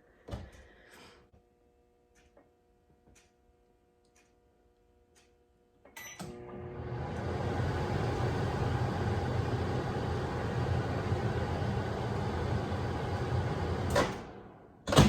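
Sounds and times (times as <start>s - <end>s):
microwave oven humming: 5.9s - 15.0s.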